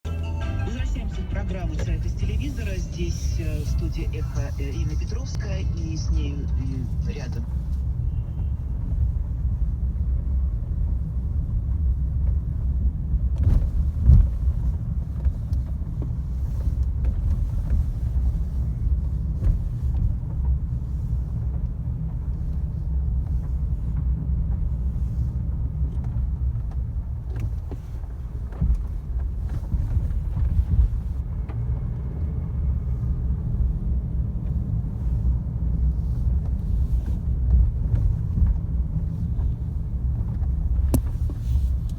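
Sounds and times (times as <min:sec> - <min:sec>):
tyre and road rumble: 0:00.0 - 0:41.9
car knocking over bumps: 0:07.9 - 0:32.0, 0:33.4 - 0:41.9.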